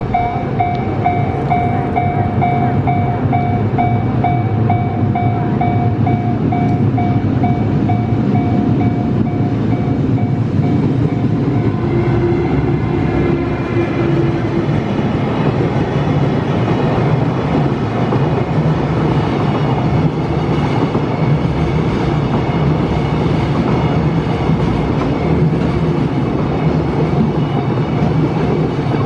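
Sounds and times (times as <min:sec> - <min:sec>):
low steady tone: 0:00.0 - 0:14.3
level-crossing warning bell: 0:00.0 - 0:15.5, 0:19.1 - 0:29.0
freight train rumbling: 0:00.0 - 0:29.0.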